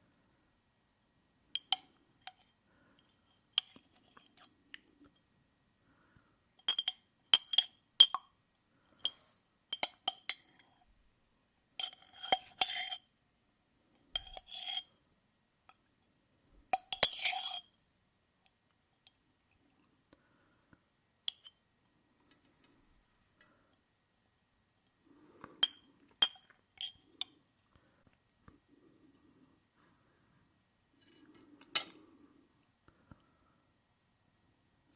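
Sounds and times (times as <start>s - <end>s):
cutlery clinking on glassware: 14.2s - 14.9s.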